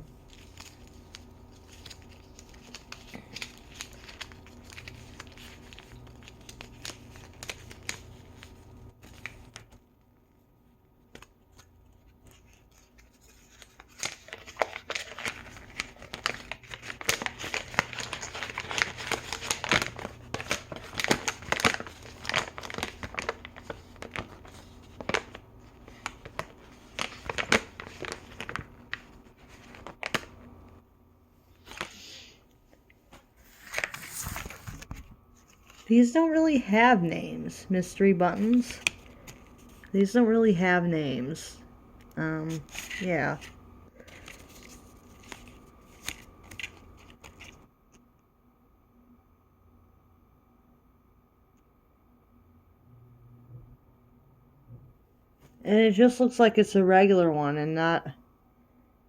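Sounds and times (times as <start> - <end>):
packaging crinkling and tearing: 0.2 - 9.8, 11.1 - 30.6, 33.4 - 35.9, 42.4 - 47.7.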